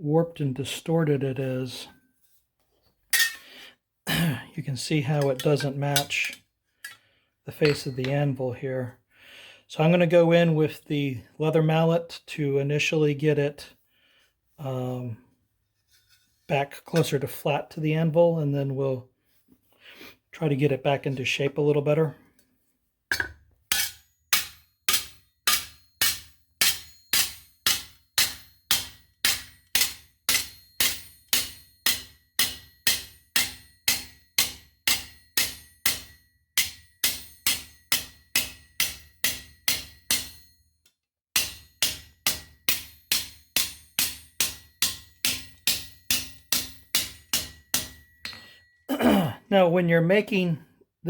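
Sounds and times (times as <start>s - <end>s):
mallet striking metal on anvil: 7.6s - 8.1s, 23.1s - 40.6s, 41.4s - 48.5s.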